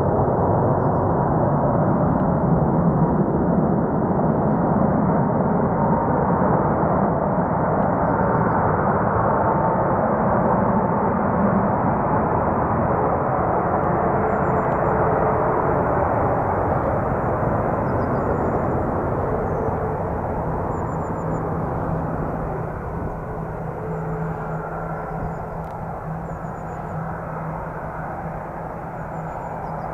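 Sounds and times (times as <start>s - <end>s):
jet engines rushing: 9.5s - 29.9s.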